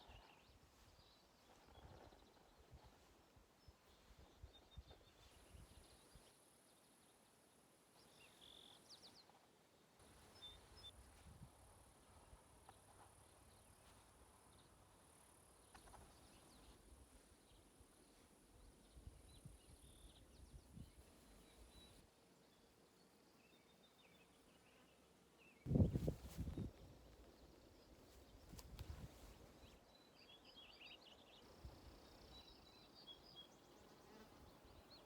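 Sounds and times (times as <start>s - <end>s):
wind rumble on microphone: 25.7s - 27.2s.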